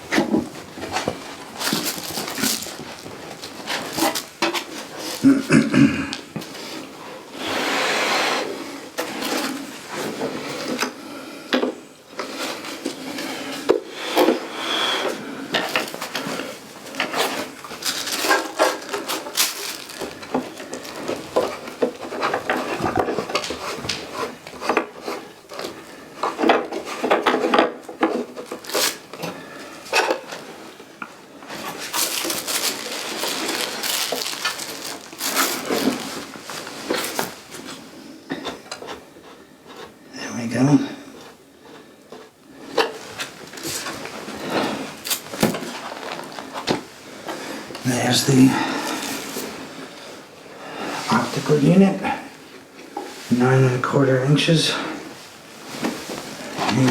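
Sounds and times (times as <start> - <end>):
box and packing knocks and scrapes: 0.0 - 5.5, 15.1 - 30.6, 31.4 - 37.8, 42.6 - 47.7, 55.6 - 56.9
long sliding rub: 6.6 - 9.3.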